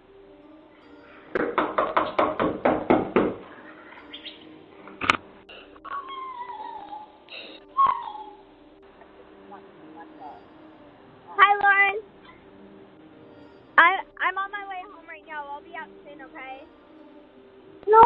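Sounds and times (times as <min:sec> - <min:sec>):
rapid knocking on a door: 0:01.4 - 0:03.4
cat-like yowls: 0:05.8 - 0:08.5.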